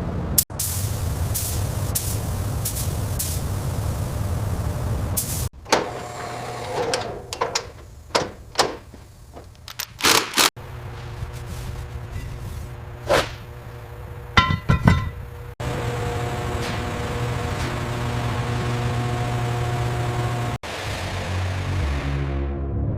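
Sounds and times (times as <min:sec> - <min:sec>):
sharp knocks and clunks: 0:06.8 - 0:09.6, 0:14.4 - 0:15.3
ringing metallic hits: 0:14.4 - 0:15.3.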